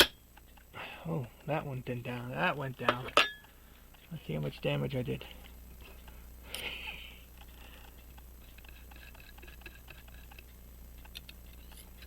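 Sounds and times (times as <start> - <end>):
metallic chink: 0.0 - 0.4, 2.8 - 3.5
low electrical hum: 0.0 - 12.0.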